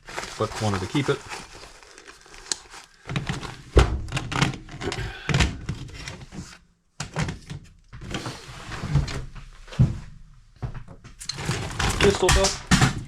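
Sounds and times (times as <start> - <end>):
nylon gear thumps and rustling: 2.4 - 7.4, 8.8 - 13.0.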